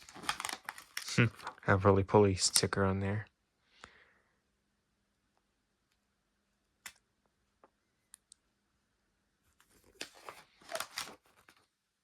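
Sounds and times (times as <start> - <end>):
book pages rustling: 0.0 - 1.6, 9.5 - 11.8.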